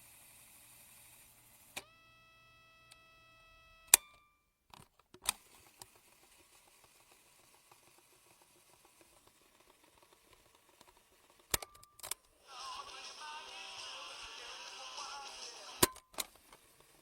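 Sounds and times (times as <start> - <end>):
mechanical clicks and ticking: 4.7 - 12.3.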